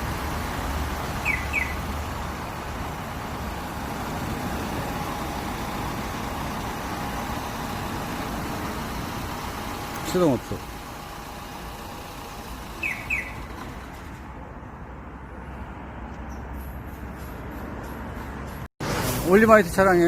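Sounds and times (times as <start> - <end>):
truck diesel engine idling: 0.0 - 15.1.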